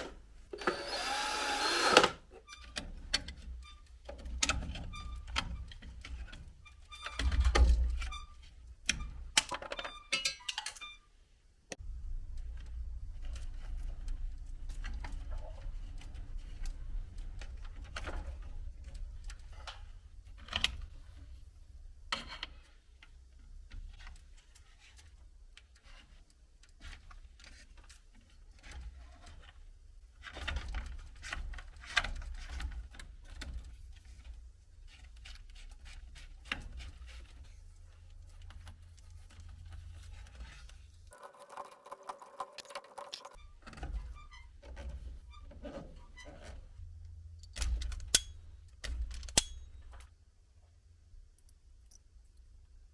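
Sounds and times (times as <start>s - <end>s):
tools and parts clicking: 8.8s - 11.1s, 41.1s - 43.8s, 47.4s - 50.1s, 51.4s - 52.1s.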